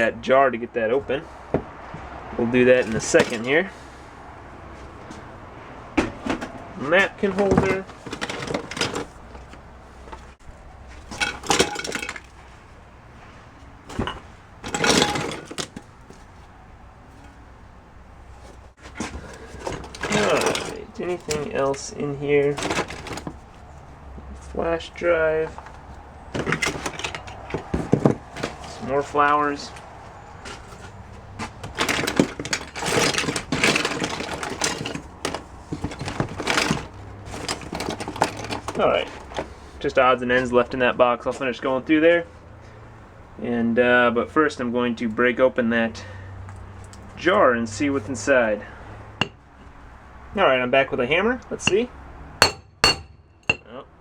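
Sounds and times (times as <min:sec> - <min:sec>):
objects clinking in a box: 0:07.3 - 0:10.3, 0:11.0 - 0:12.4, 0:13.9 - 0:15.8, 0:18.9 - 0:21.9, 0:22.5 - 0:23.4, 0:25.6 - 0:28.9, 0:30.4 - 0:39.5.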